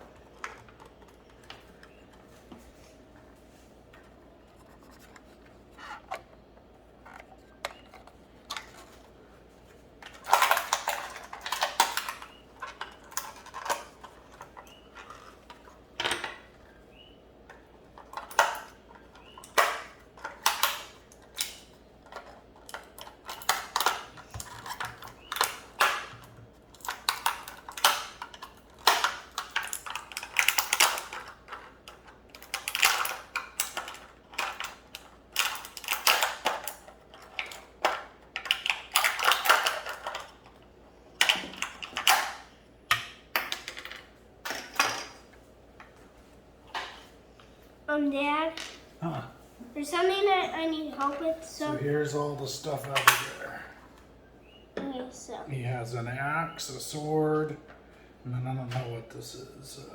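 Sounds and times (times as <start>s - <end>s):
plastic toy pieces clattering: 10.0s - 16.4s, 18.0s - 40.6s, 41.2s - 45.2s.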